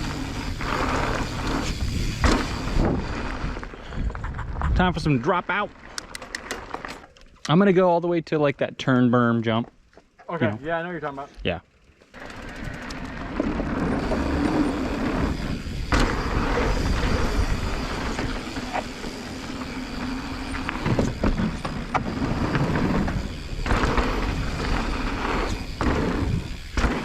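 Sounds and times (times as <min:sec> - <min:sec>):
bike rattling over bumps: 0:00.0 - 0:07.2, 0:11.7 - 0:27.0
bike tyres on dirt trail: 0:00.0 - 0:07.8, 0:09.0 - 0:27.0
wind buffeting microphone: 0:13.9 - 0:18.7.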